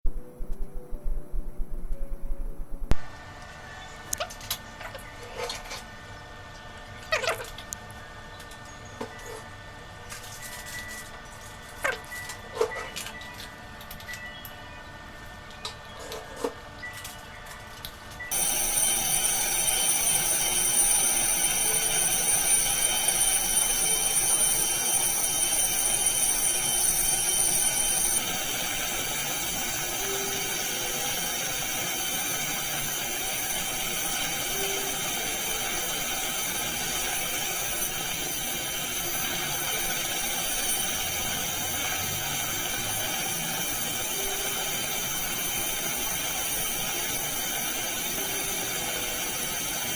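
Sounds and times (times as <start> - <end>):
dental drill whine: 18.3 - 49.9.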